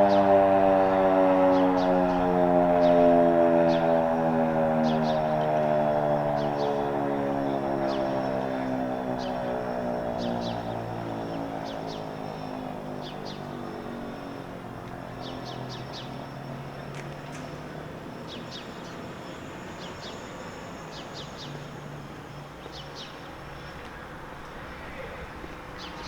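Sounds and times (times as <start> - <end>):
fire siren winding down: 0.0 - 12.9.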